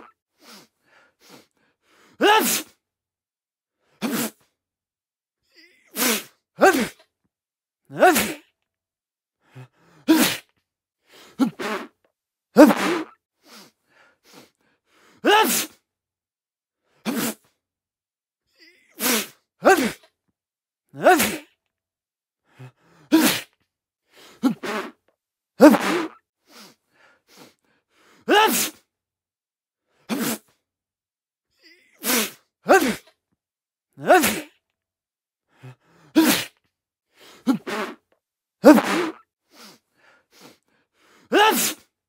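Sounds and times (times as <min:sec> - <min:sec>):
man sneezing: 0:02.2 - 0:02.8, 0:03.9 - 0:04.5, 0:05.5 - 0:07.1, 0:07.9 - 0:08.5, 0:10.1 - 0:10.6, 0:11.4 - 0:12.0, 0:12.6 - 0:13.2, 0:15.2 - 0:15.8, 0:17.0 - 0:17.6, 0:18.6 - 0:20.1, 0:21.0 - 0:21.6, 0:23.1 - 0:23.6, 0:24.3 - 0:25.0, 0:25.6 - 0:26.2, 0:28.3 - 0:28.9, 0:30.0 - 0:30.6, 0:31.6 - 0:33.2, 0:34.0 - 0:34.6, 0:36.0 - 0:36.6, 0:37.3 - 0:38.0, 0:38.6 - 0:39.3, 0:41.3 - 0:41.9.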